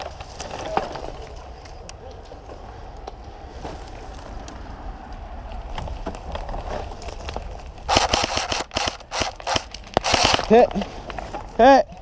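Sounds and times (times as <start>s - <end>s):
rustling movement: 5.5s - 11.6s
airsoft gun shots: 7.9s - 10.7s.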